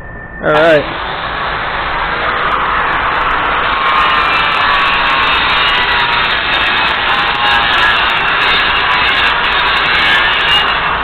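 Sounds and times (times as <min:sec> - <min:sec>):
faint whine dropping in pitch: 0:00.0 - 0:08.5
loud motor running: 0:00.6 - 0:11.0.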